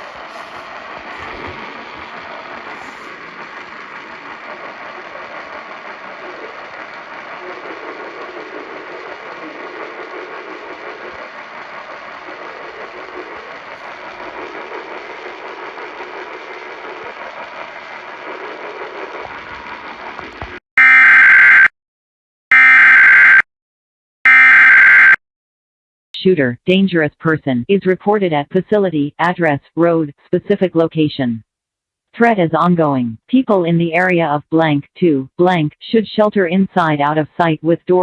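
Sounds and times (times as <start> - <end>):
faint radio program audio: 0.0 - 20.6
hissy radio reception: 0.0 - 20.6.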